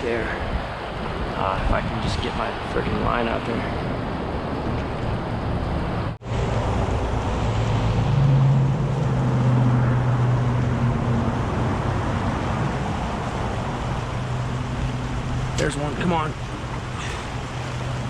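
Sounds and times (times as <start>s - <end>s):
creek rushing over rocks: 12.4s - 18.0s.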